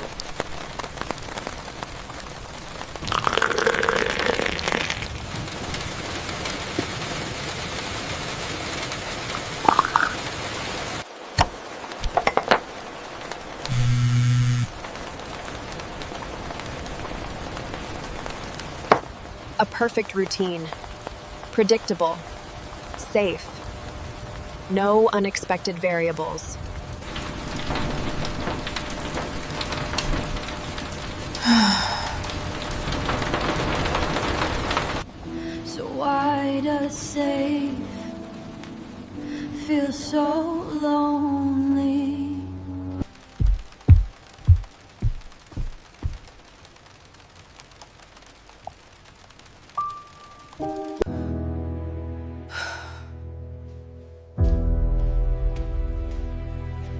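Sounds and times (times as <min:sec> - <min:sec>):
steady rain falling: 0:00.0 - 0:51.2, 0:52.5 - 0:53.1
sharp clicks and taps: 0:43.4 - 0:46.2.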